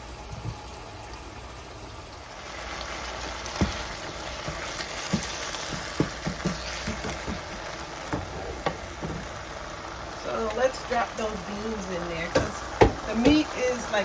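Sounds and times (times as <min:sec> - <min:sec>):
meat sizzling in a frying pan: 0:00.0 - 0:14.0.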